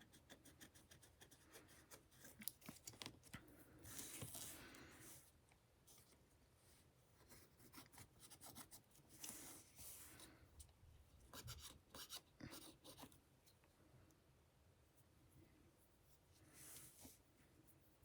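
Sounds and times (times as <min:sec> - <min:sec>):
faint scraping and rubbing: 0:03.5 - 0:05.3, 0:09.1 - 0:10.7, 0:14.8 - 0:18.0.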